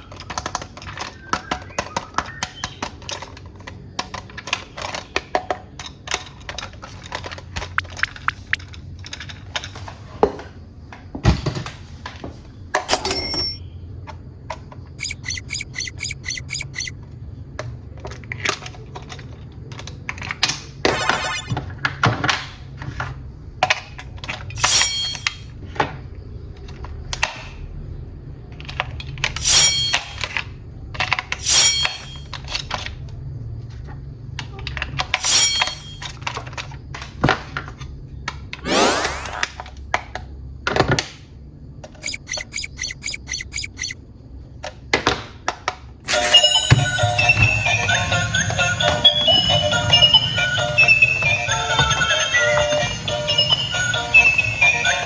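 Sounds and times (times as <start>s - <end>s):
plastic toy parts clicking: 0.0s - 9.8s, 14.5s - 17.0s, 18.0s - 20.7s, 41.8s - 44.0s
rapid ticking: 15.0s - 16.9s, 42.0s - 44.0s.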